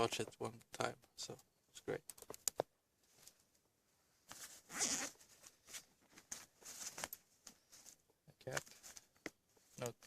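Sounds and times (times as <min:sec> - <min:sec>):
bag zipper pulled open: 0:04.7 - 0:05.2.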